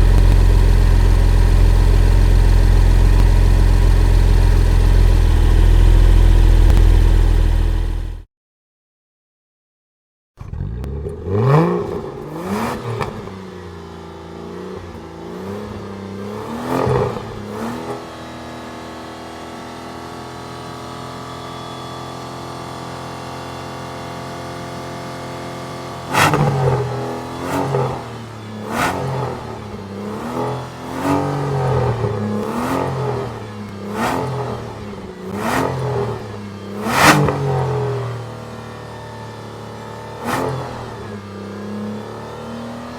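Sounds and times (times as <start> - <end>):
sports car engine revving: 0.0 - 8.2, 10.4 - 19.1, 25.6 - 39.0, 39.9 - 42.9.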